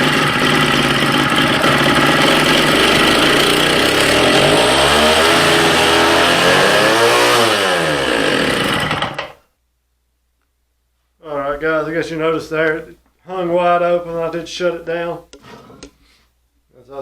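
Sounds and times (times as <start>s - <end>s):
two-stroke engine racing: 0.0s - 9.4s.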